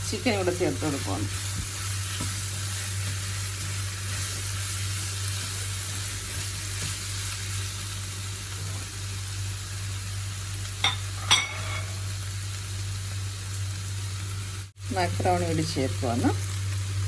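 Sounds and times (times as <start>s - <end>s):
food sizzling in oil: 0.0s - 17.0s
utensil clinking against pan: 10.8s - 12.0s.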